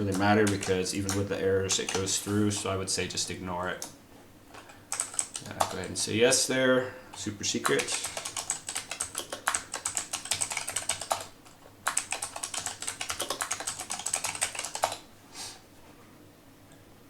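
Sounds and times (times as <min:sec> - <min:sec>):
fast typing on keyboard: 0:00.0 - 0:03.9, 0:04.6 - 0:06.0, 0:07.2 - 0:15.1.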